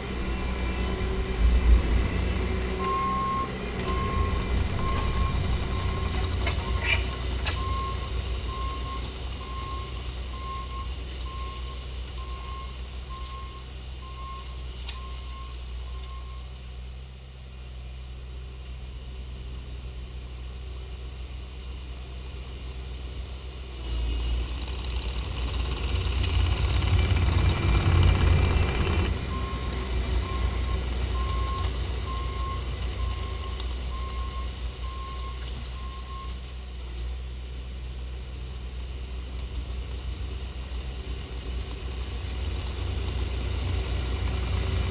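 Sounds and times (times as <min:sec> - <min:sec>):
diesel engine running: 0:00.0 - 0:44.9
reversing alarm beeps: 0:02.8 - 0:06.8, 0:07.6 - 0:16.5, 0:29.3 - 0:36.4.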